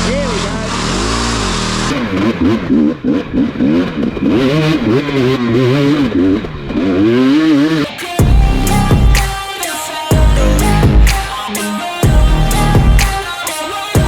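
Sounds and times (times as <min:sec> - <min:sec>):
dirt bike engine revving: 0:00.0 - 0:14.0
music with heavy bass: 0:07.9 - 0:14.0.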